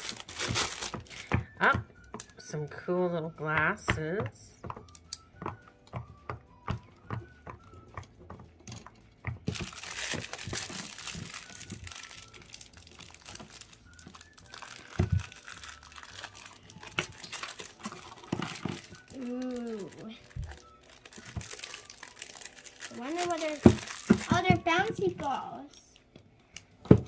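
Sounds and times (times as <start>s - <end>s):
plastic packaging crinkling and tearing: 0.0s - 1.3s, 9.5s - 25.8s
plastic toys clicking and tapping: 0.0s - 2.4s, 3.6s - 27.0s.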